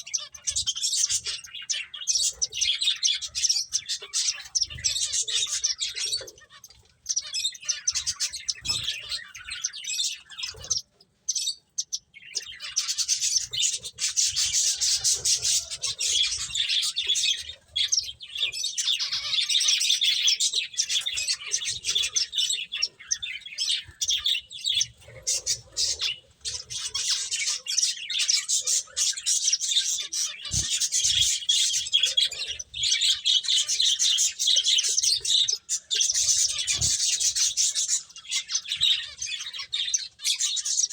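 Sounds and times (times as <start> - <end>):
finches chirping: 0.0 - 40.9.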